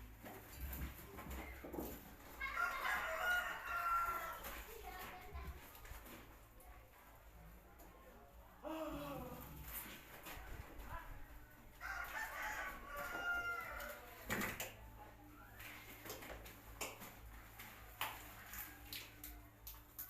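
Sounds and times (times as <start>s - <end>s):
rooster crowing: 2.4s - 4.4s, 11.8s - 14.1s.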